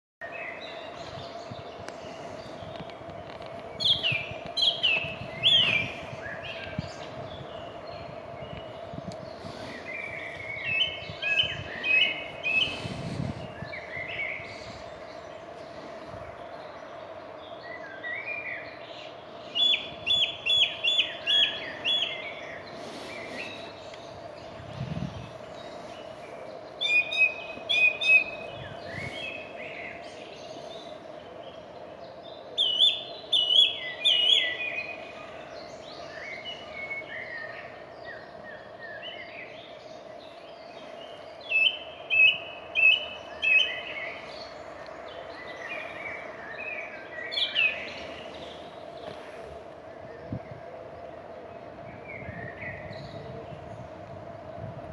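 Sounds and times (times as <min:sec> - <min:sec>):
faint hum: 0:00.2 - 0:54.9
songbird singing high notes: 0:26.8 - 0:30.0.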